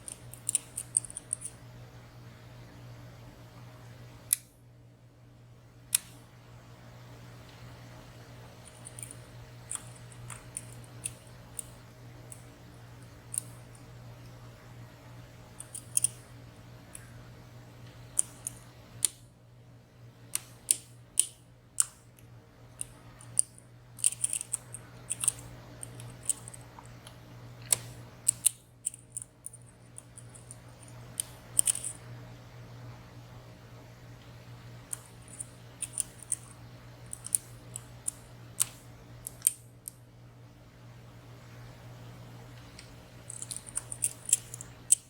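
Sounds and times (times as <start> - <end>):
lock picks clicking in padlock: 0.0 - 1.6, 15.6 - 16.2, 31.2 - 32.0, 43.3 - 45.0.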